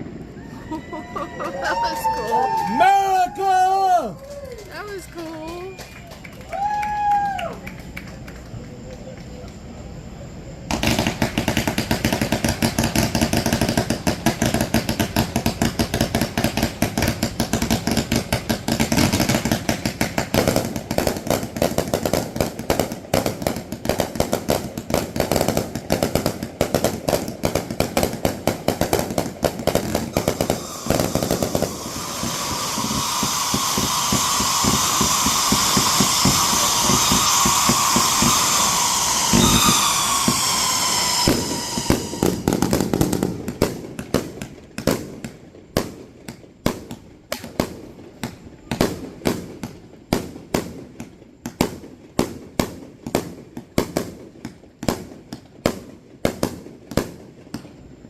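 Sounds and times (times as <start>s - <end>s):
fireworks sharp reports: 0.0s - 7.1s, 9.6s - 57.6s
falling whistles: 30.1s - 42.9s
high whistling: 30.2s - 42.6s.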